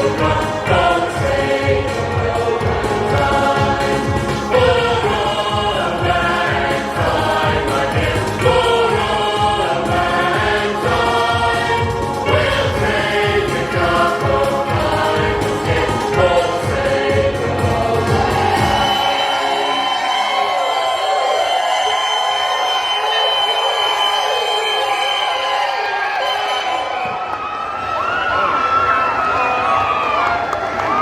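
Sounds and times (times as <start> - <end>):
choir singing music: 0.0 - 27.0.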